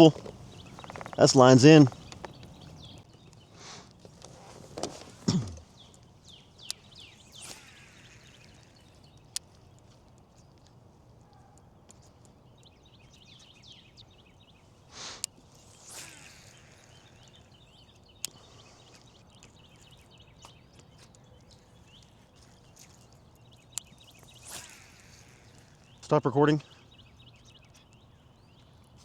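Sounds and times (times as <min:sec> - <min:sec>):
sharp clicks: 0:00.0 - 0:03.4
birds chirping: 0:00.0 - 0:29.0
short swishes: 0:14.9 - 0:17.6, 0:24.0 - 0:25.9.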